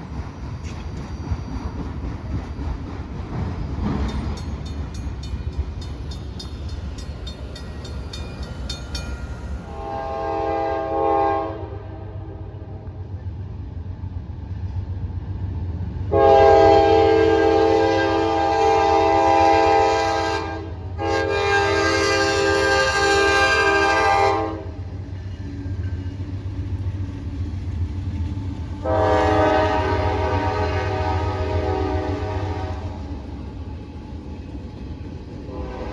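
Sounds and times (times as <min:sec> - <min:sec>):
passing train rumble: 0:00.0 - 0:35.9
locomotive air horn blasts: 0:09.7 - 0:12.8, 0:16.1 - 0:24.8, 0:28.8 - 0:33.0, 0:35.5 - 0:35.9.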